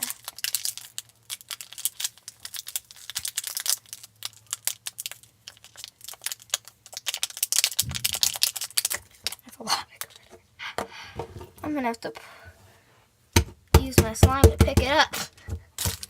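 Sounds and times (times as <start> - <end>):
slime squishing with sticky crackles: 0.0 - 10.2.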